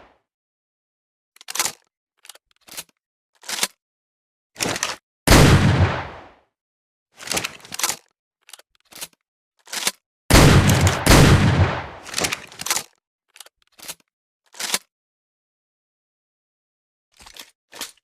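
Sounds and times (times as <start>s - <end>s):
shotgun blasts: 5.3s - 6.3s, 10.3s - 12.4s
metallic gun clicks: 10.6s - 14.9s.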